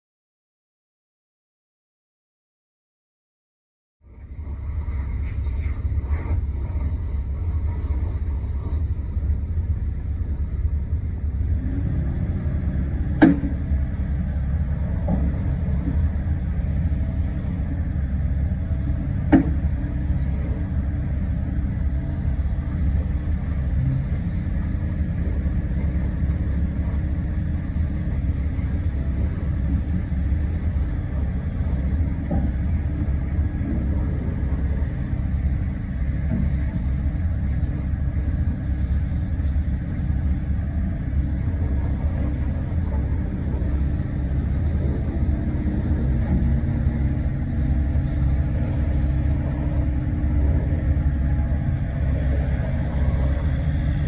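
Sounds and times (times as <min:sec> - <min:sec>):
excavator diesel engine rumbling: 0:04.1 - 0:54.0
sharp knocks: 0:13.2 - 0:13.6.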